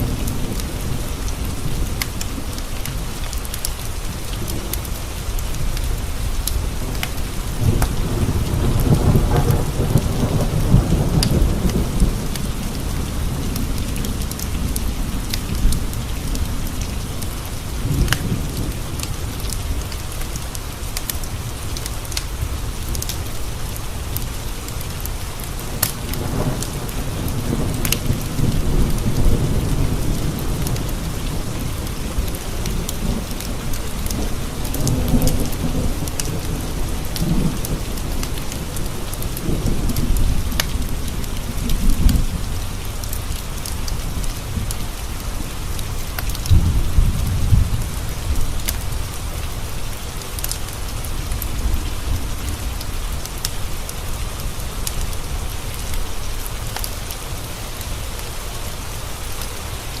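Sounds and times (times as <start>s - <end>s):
rain pattering on windowpanes: 0.0s - 60.0s
rolling thunder: 4.4s - 19.9s, 45.7s - 49.2s.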